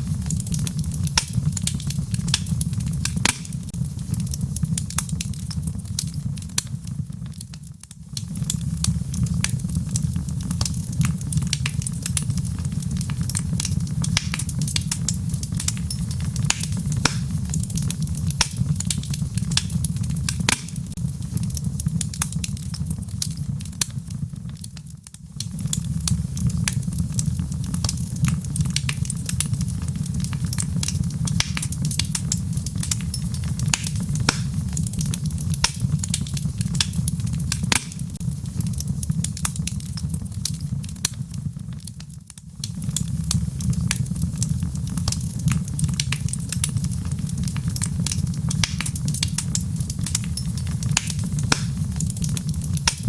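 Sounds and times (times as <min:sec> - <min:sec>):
fire rumbling: 0:00.0 - 0:53.0
wood crackling and popping: 0:00.0 - 0:53.0.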